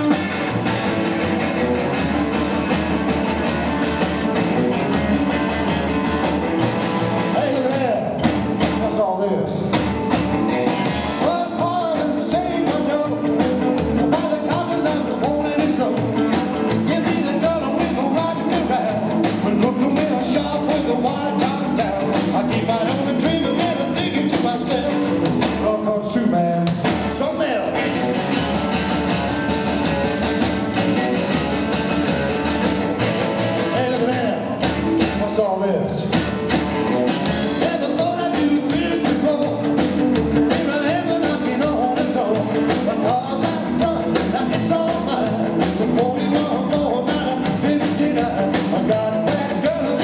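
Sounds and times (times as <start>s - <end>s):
rockabilly band playing live: 0.0s - 50.0s.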